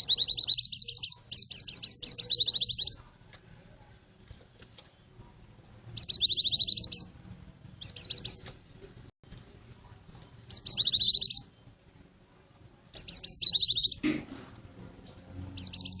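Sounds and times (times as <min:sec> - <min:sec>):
bird twittering trills: 0:00.0 - 0:03.0, 0:06.0 - 0:07.1, 0:07.8 - 0:08.4, 0:10.5 - 0:11.5, 0:13.0 - 0:14.0, 0:15.5 - 0:16.0.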